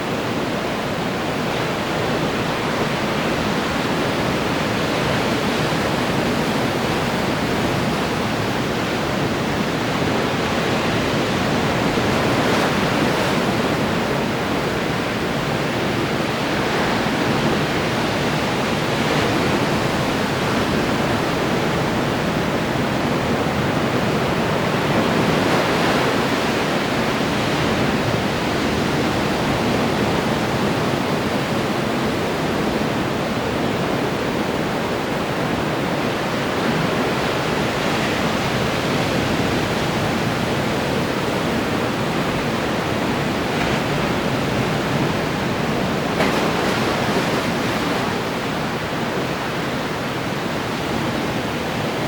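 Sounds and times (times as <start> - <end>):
ocean waves breaking on shore: 0.0 - 52.0.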